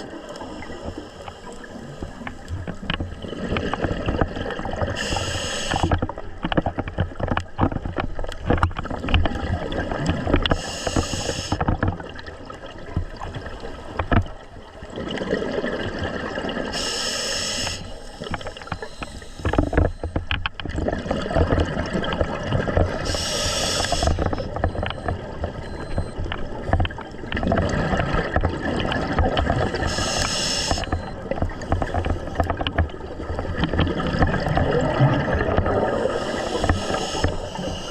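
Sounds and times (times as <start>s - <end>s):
exhaled bubbles gurgling: 0.0s - 6.4s, 8.8s - 37.9s
regulator inhalation hiss: 5.0s - 5.9s, 10.6s - 11.6s, 16.8s - 19.5s, 23.1s - 24.3s, 29.9s - 30.9s, 36.1s - 37.9s.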